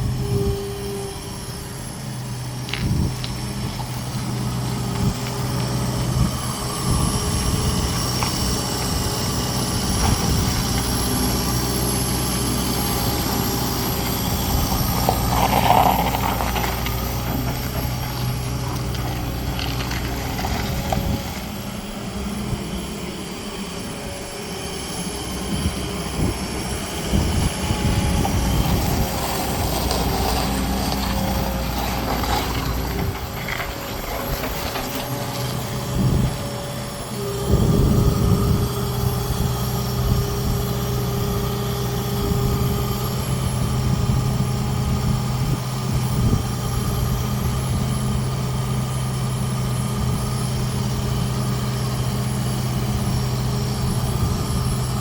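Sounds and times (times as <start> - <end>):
thin high whine: 0.0 - 4.2
diesel engine running: 0.0 - 55.0.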